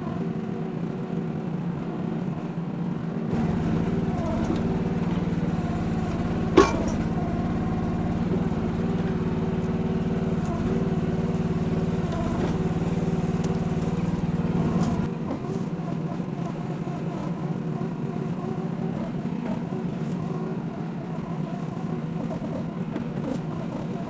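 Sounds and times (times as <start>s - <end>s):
excavator engine running: 0.0s - 24.0s
sharp metal clank: 6.5s - 7.2s.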